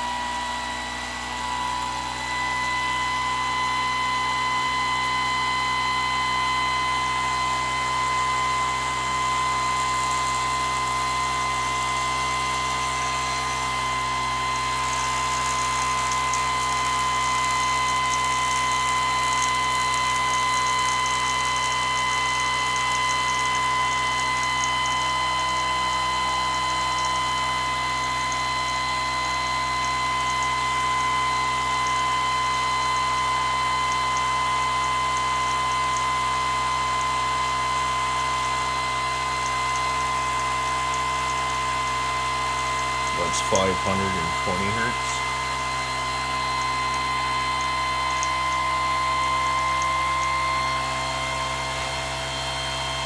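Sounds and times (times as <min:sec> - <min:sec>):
motor high-pitched whine: 0:00.0 - 0:53.0
spinning rotor hiss: 0:07.5 - 0:33.0.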